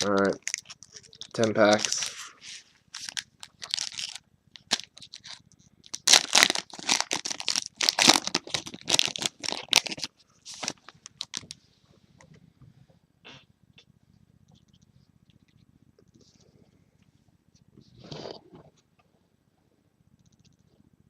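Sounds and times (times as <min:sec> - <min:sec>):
foil wrappers tearing and crinkling: 0:00.0 - 0:11.6.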